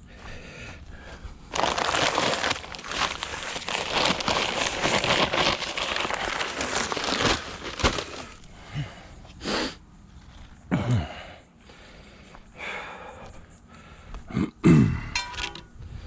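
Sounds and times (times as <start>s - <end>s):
dry concrete mix pouring from bag: 1.5s - 8.5s.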